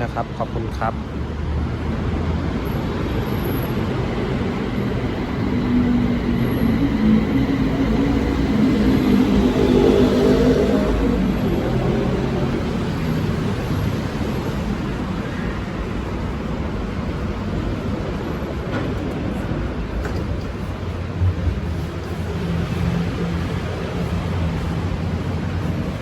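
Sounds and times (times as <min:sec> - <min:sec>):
train rumble and hum: 0:00.0 - 0:26.0.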